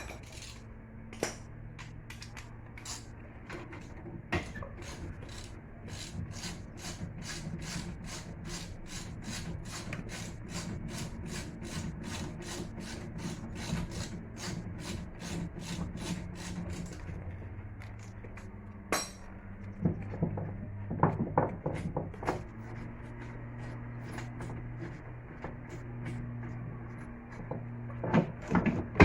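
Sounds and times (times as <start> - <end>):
hand tool scraping: 4.8 - 17.1.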